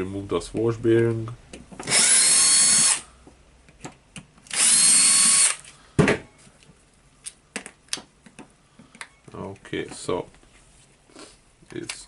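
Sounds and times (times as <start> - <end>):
power drill spinning: 1.8 - 3.0, 4.5 - 5.6.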